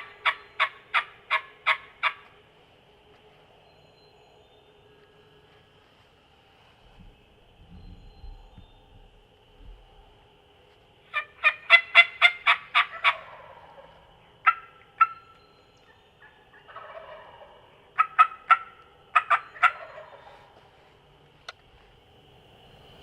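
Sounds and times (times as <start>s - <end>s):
turkey yelping: 0.0s - 2.3s, 11.1s - 15.4s, 16.2s - 20.4s.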